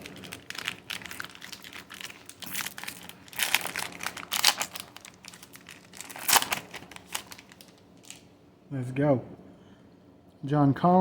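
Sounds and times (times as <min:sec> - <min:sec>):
foil wrapper crinkling: 0:00.0 - 0:08.2.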